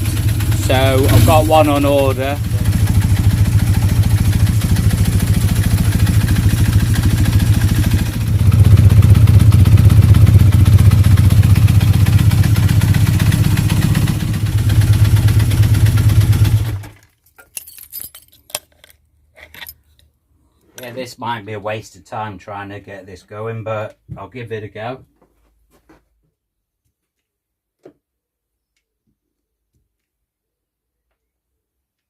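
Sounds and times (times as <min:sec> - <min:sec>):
motorcycle engine running: 0:00.0 - 0:16.9.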